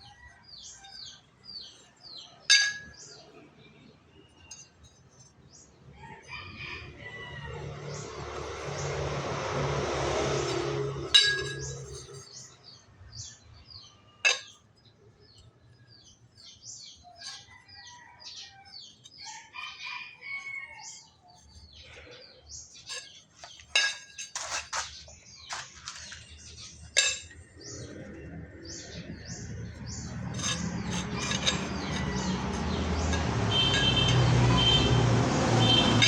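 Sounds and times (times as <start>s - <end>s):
ringing metal clank: 2.5s - 3.1s, 11.0s - 12.3s, 30.3s - 32.4s
birds chirping: 10.4s - 36.0s
metal rasping: 22.8s - 25.0s, 28.8s - 36.0s.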